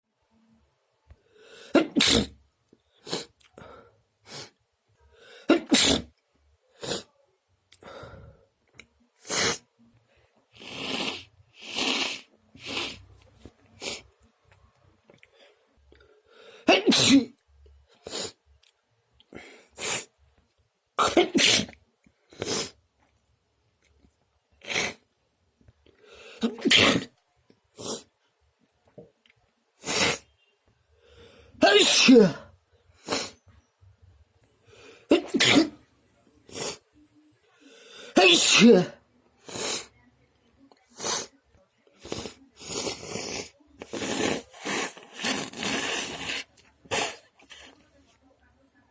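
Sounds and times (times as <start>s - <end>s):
person sneezing: 1.5s - 2.4s, 5.4s - 6.1s, 9.2s - 9.6s, 16.6s - 17.3s, 21.0s - 21.8s, 26.2s - 27.1s, 29.8s - 30.3s, 31.6s - 33.4s, 34.8s - 35.8s, 36.5s - 36.8s, 37.9s - 39.9s, 41.0s - 41.3s, 42.0s - 47.8s.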